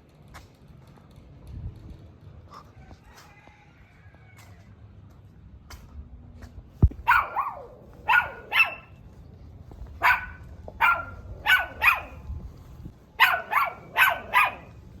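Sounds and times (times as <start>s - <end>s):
low thump: 6.8s - 7.1s
small dog barking: 6.8s - 9.0s, 9.8s - 12.4s, 13.2s - 15.0s.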